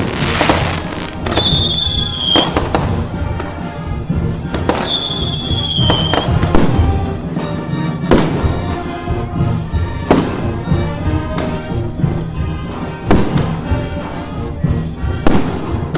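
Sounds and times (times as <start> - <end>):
high firework whistle: 0.0 - 2.8, 4.7 - 6.8
firecracker bangs: 0.0 - 3.2, 4.5 - 7.0, 8.1 - 8.7, 10.1 - 10.7, 13.1 - 13.7, 15.2 - 15.8
festival music: 0.0 - 15.9.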